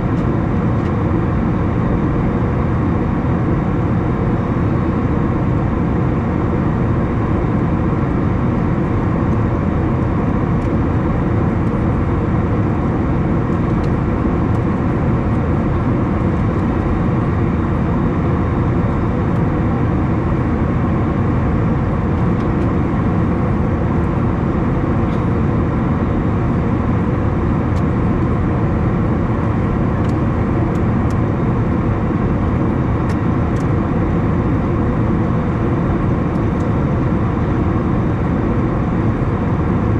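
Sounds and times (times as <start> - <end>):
aircraft engine drone: 0.0 - 39.9
rushing airflow in cabin: 0.0 - 39.9.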